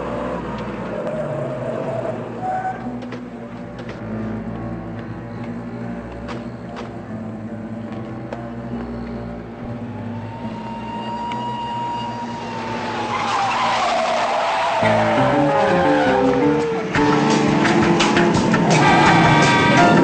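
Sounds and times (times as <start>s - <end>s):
car tires squealing: 0.0s - 3.0s, 10.0s - 20.0s
dramatic chase music: 14.8s - 20.0s.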